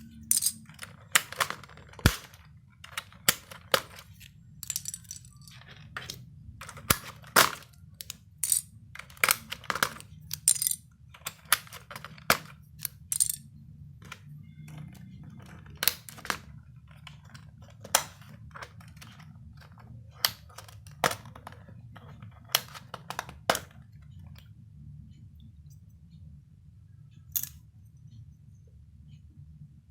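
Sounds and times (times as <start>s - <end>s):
plastic keyboard parts clattering: 0.0s - 13.4s, 14.0s - 24.4s
faint low hum: 0.0s - 29.9s.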